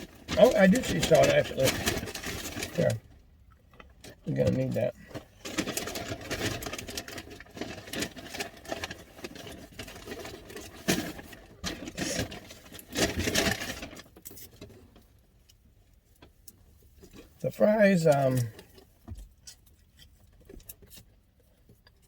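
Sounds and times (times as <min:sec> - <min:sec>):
paper packaging rustling: 0:00.0 - 0:03.0, 0:03.7 - 0:15.1.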